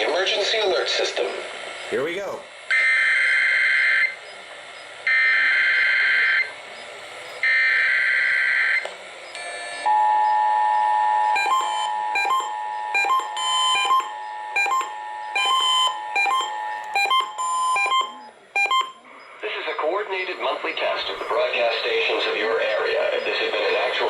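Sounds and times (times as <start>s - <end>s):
two-tone attention signal: 9.4s - 19.3s
short beeps: 9.8s - 19.1s.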